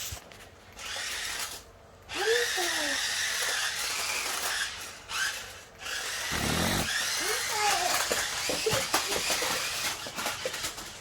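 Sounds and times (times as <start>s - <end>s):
toy car electric motors whining: 0.8s - 11.0s.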